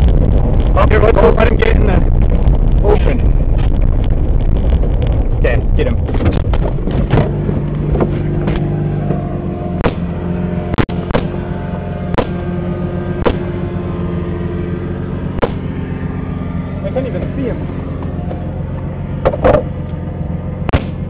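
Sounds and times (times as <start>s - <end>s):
car engine running: 0.0s - 21.0s
sharp knocks and rattles: 6.0s - 9.2s, 18.8s - 19.9s.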